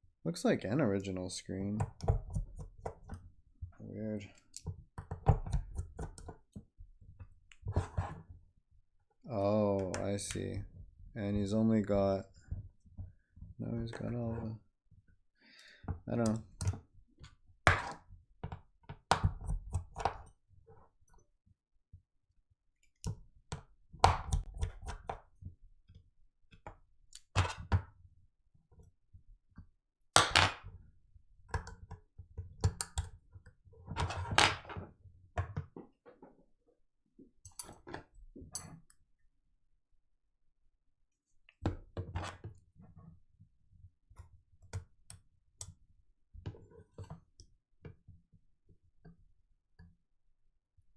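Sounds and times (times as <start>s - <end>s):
small tools clicking and tapping: 31.6s - 33.1s, 37.5s - 38.9s.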